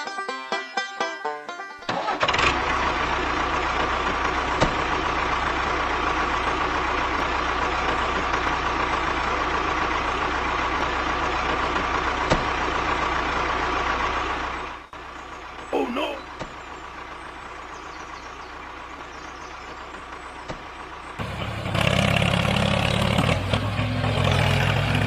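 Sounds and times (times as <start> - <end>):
engine starting and idling: 1.8 - 25.0.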